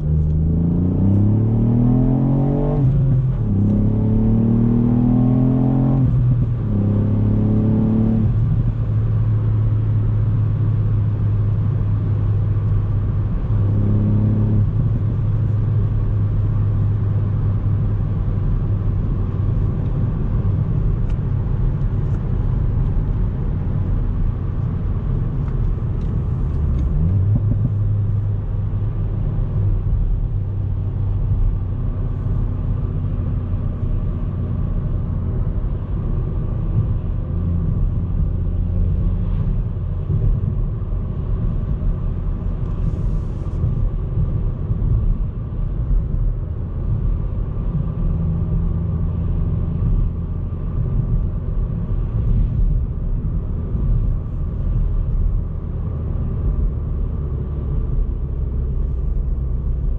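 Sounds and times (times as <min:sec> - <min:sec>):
car engine cruising: 0:00.0 - 0:59.9.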